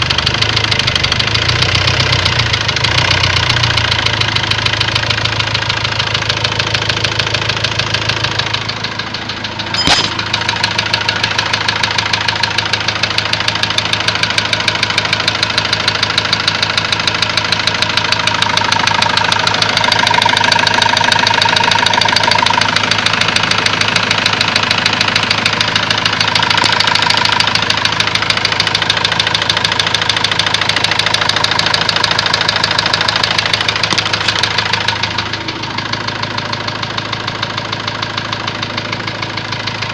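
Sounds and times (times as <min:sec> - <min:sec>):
diesel engine idling with knock: 0:00.0 - 0:39.9
sharp click: 0:09.8 - 0:10.4.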